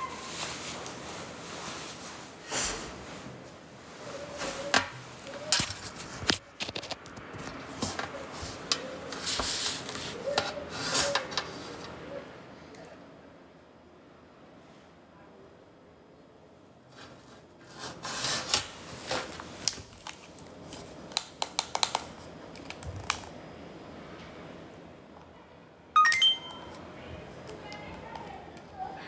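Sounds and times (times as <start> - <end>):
rustling and rubbing: 0.0 - 12.0.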